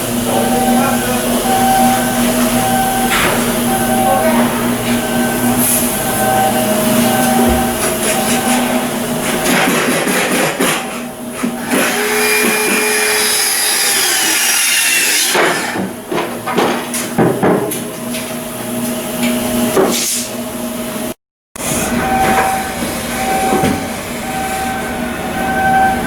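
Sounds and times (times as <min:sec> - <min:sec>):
machinery hum: 0:00.0 - 0:09.6, 0:21.6 - 0:26.0
power tool whine: 0:11.6 - 0:15.9.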